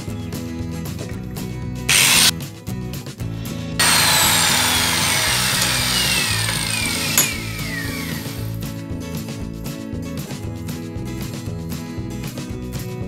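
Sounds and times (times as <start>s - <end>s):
power tool cutting: 1.9s - 2.3s, 3.8s - 8.5s.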